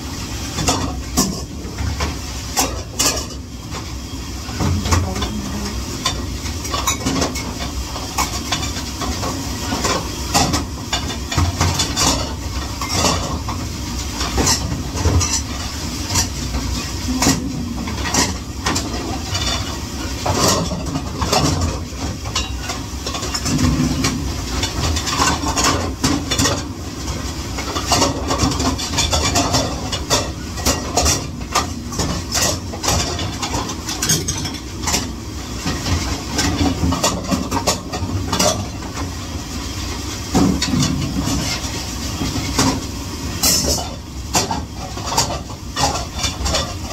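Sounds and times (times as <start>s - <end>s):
steady hiss and rumble: 0.0s - 46.9s
dishes and utensils clattering: 0.5s - 39.2s, 40.3s - 46.9s.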